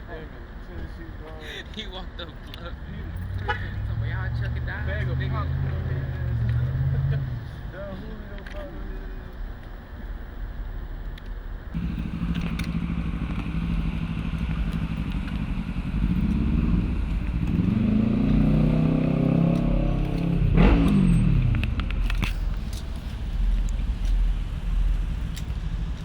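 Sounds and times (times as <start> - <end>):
vehicle engine accelerating: 2.7 - 8.2, 11.7 - 26.0.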